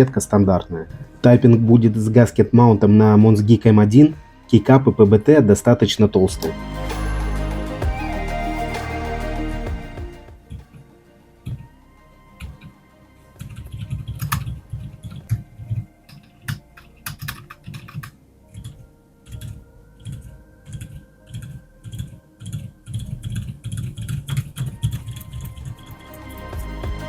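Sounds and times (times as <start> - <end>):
muted keyboard typing: 13.4 - 25.8.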